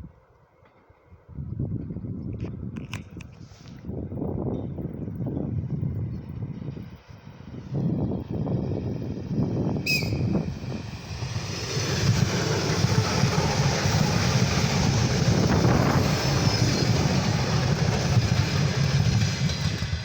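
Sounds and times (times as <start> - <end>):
train passing with heavy rumble: 0.0 - 20.0.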